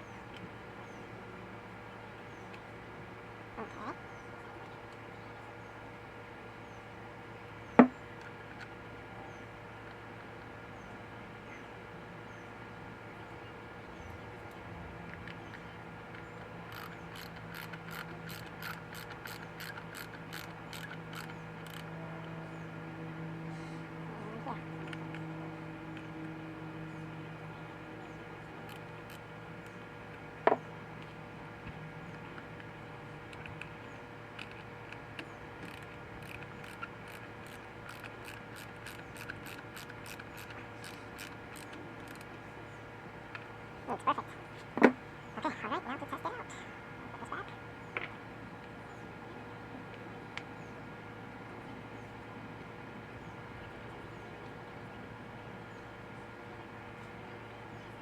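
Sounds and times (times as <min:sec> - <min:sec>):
hand ratchet clicking: 0:16.7 - 0:21.8, 0:35.6 - 0:42.2.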